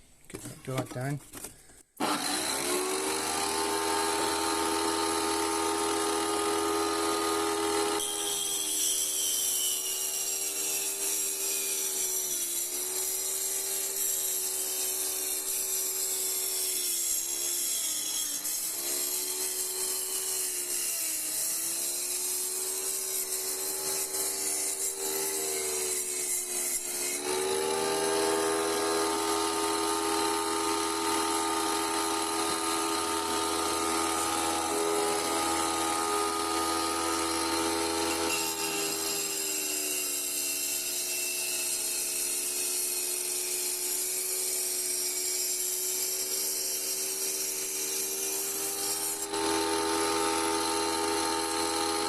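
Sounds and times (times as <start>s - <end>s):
wet saw motor whine: 2.0s - 8.6s, 26.8s - 41.8s, 47.1s - 52.0s
saw blade cutting glass: 2.0s - 52.0s.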